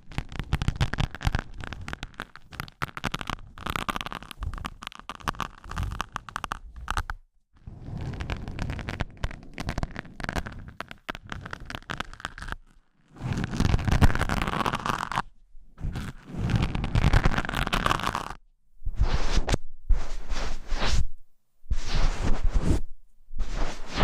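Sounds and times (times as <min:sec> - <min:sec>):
hands scratching and rustling: 0:00.0 - 0:18.4, 0:23.4 - 0:24.0.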